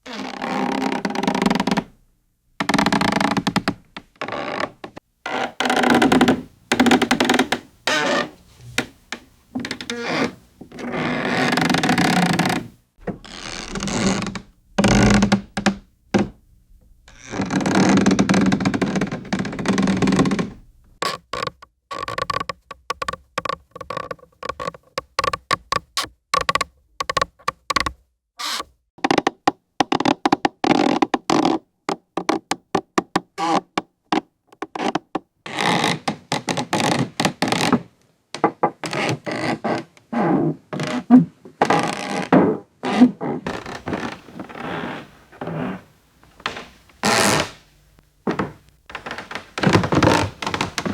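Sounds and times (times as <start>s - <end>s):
wooden stairs creaking: 2.6s - 16.4s, 17.1s - 20.6s, 41.6s - 50.9s.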